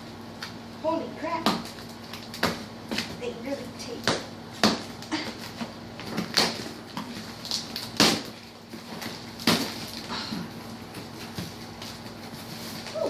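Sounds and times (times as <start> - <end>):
packaging rustling and tearing: 1.6 - 2.5, 4.8 - 13.0.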